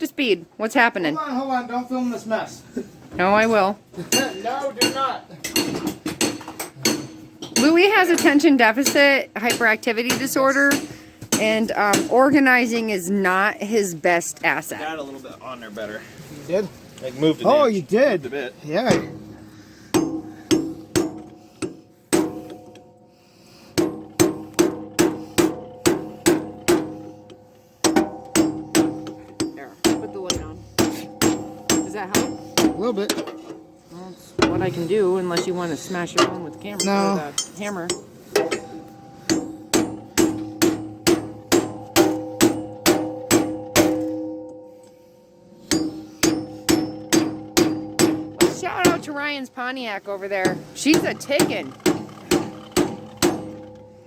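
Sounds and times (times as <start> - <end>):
hammer striking steel pulley: 4.1 - 12.2, 18.9 - 23.0, 23.7 - 33.7, 35.3 - 49.5, 50.4 - 54.0.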